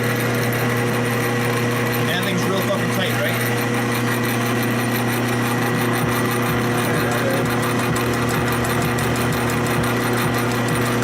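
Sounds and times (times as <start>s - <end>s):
electric motor humming and whining: 0.0s - 11.0s.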